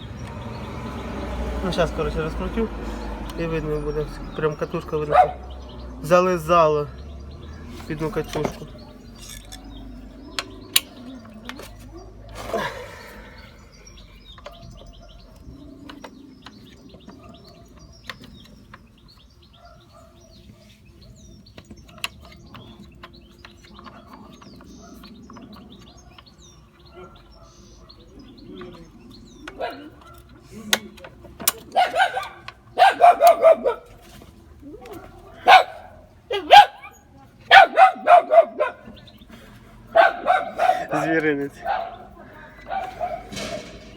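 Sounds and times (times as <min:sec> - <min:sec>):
birds chirping: 0:00.0 - 0:43.9
dog barking: 0:05.0 - 0:05.5, 0:14.4 - 0:15.4, 0:19.5 - 0:20.8, 0:26.8 - 0:28.1, 0:29.6 - 0:30.3, 0:31.7 - 0:34.0, 0:34.9 - 0:39.0, 0:39.9 - 0:43.7
metallic clicks of hand tools: 0:08.3 - 0:09.8.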